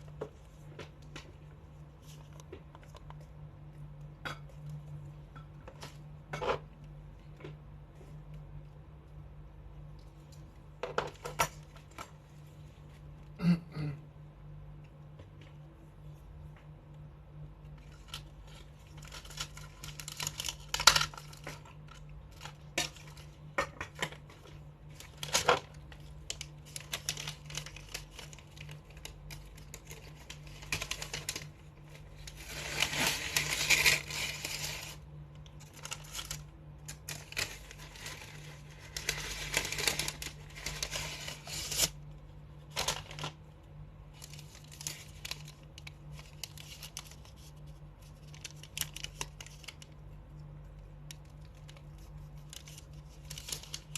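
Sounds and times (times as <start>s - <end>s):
steady low hum: 0.0s - 53.9s
packaging crinkling and rustling: 17.7s - 42.0s, 42.6s - 53.9s.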